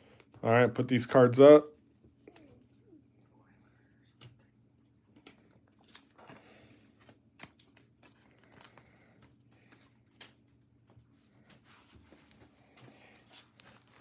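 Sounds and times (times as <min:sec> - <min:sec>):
steady low hum: 0:00.0 - 0:14.0
trading cards rustling and clicking: 0:05.1 - 0:14.0.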